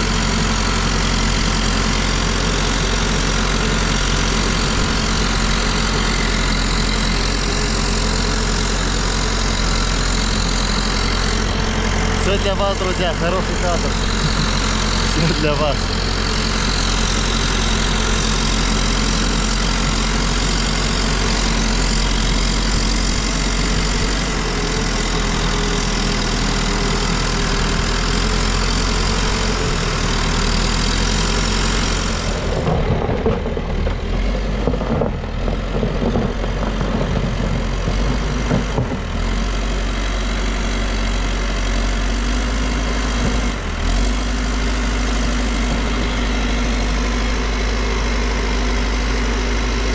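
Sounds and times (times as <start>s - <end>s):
diesel engine running: 0.0s - 49.9s
irregular engine knocks: 32.4s - 39.8s.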